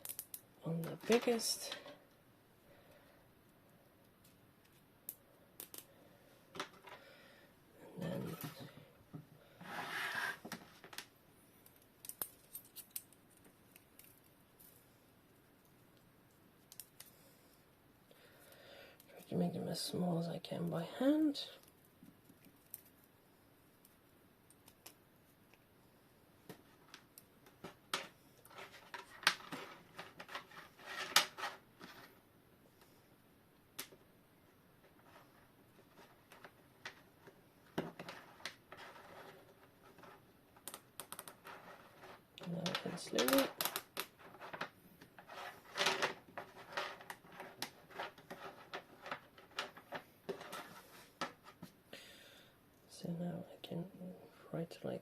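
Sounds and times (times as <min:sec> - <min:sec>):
cable ties clicking and scraping: 0:04.2 - 0:05.9, 0:09.7 - 0:14.8, 0:15.6 - 0:17.2, 0:34.9 - 0:51.7
rustling: 0:26.4 - 0:33.0, 0:34.8 - 0:51.8.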